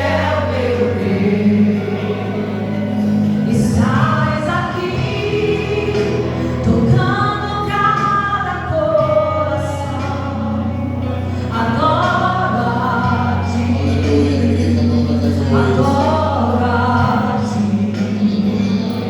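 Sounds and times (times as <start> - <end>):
vocal group singing: 0.0 - 19.0.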